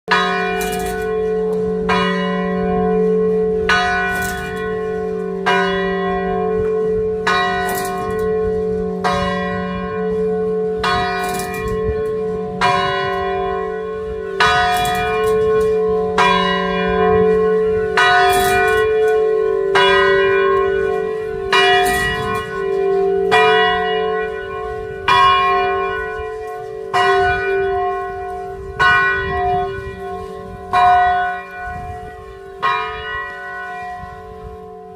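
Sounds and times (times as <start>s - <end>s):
church bell tolling: 0.1s - 34.9s.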